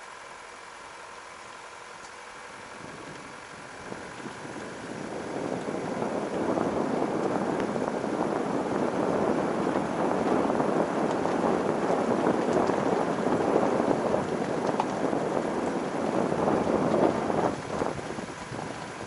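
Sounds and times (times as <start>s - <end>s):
tyres on gravel road: 0.0s - 19.0s.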